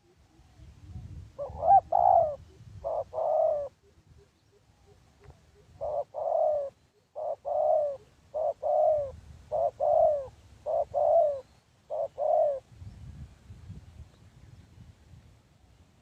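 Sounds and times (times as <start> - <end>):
dove cooing: 0.0 - 12.7.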